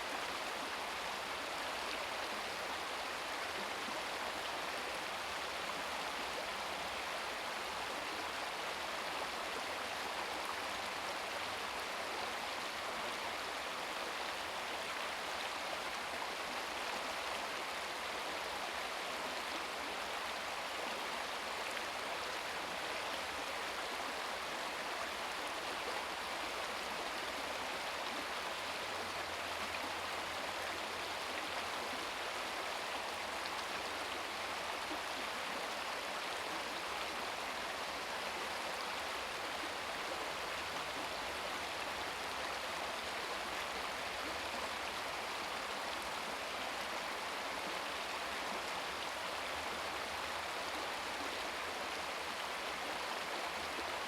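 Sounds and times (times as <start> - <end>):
brook babbling over rocks: 0.0 - 54.0.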